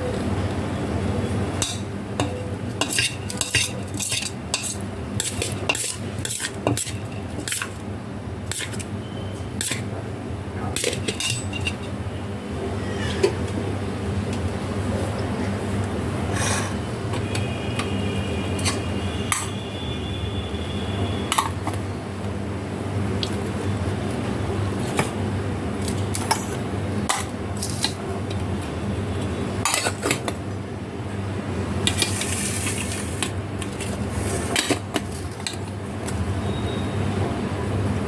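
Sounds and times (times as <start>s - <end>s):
utensils scraping pots and pans: 1.6s - 7.8s, 8.5s - 8.8s, 9.6s - 9.9s, 12.8s - 13.4s, 16.3s - 16.9s.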